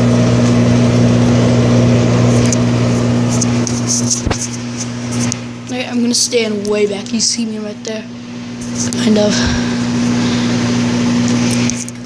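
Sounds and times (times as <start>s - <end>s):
microwave oven humming: 0.0s - 12.0s.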